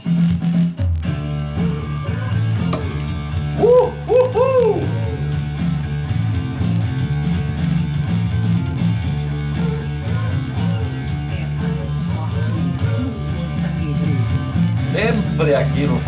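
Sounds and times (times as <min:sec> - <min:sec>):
rock song: 0:00.0 - 0:16.0.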